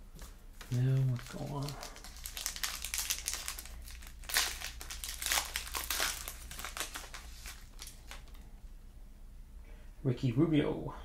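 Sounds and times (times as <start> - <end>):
wrapper crinkling: 0.6 - 8.4.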